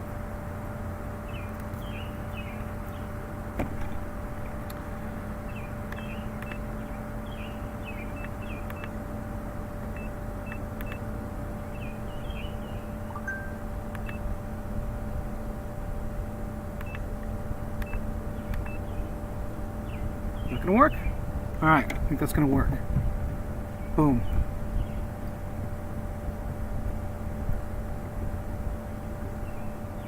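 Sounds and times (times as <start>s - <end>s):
electrical hum: 0.0s - 30.0s
small birds chirping: 1.0s - 9.1s, 9.8s - 14.3s, 17.8s - 22.3s, 23.6s - 25.2s
short beep: 13.1s - 13.6s.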